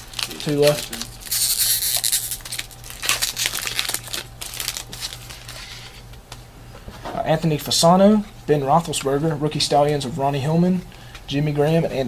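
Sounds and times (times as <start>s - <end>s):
wrapper crinkling: 0.0s - 6.0s.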